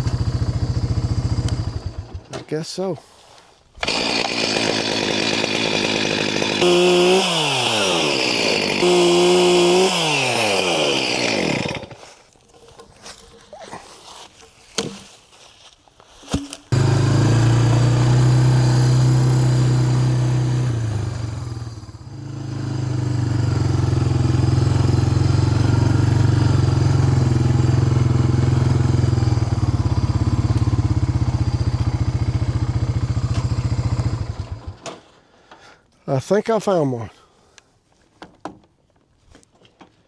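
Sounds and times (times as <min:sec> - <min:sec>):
vehicle engine running: 0:00.0 - 0:02.2, 0:16.8 - 0:34.8.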